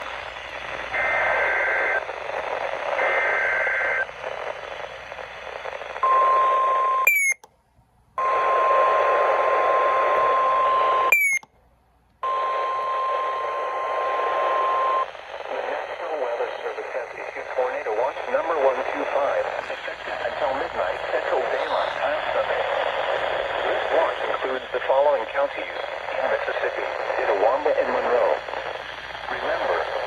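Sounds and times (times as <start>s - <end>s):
radio hiss: 0.0s - 7.0s, 8.3s - 11.4s, 12.3s - 30.0s
steady warning tone: 9.6s - 11.5s.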